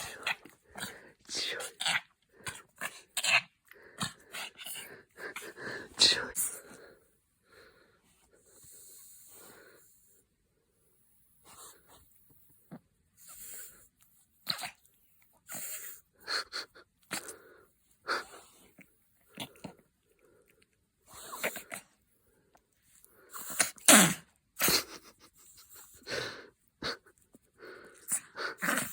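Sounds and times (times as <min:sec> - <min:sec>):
dog snorting and huffing: 0:00.0 - 0:06.6, 0:27.7 - 0:28.9.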